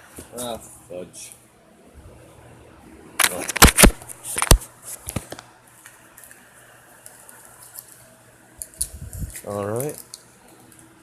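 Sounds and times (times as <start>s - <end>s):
packaging crinkling and clicking: 3.2s - 6.4s, 8.6s - 10.9s.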